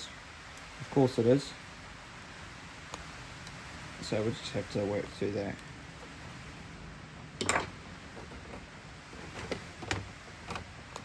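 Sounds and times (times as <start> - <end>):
rain hiss: 0.0 - 11.0
clicks and knocks of tools: 7.4 - 8.7, 9.3 - 11.0.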